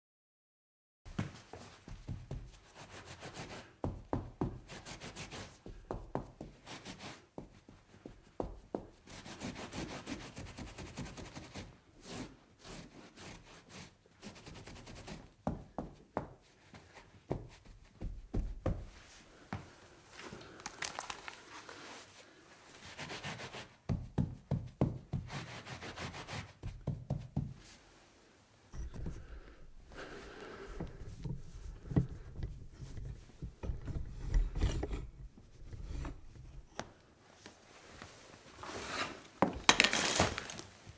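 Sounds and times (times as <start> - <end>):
rubbing and wiping a surface: 1.3 - 19.5, 21.3 - 39.4
objects knocking and clunking: 28.8 - 37.0, 39.4 - 40.9.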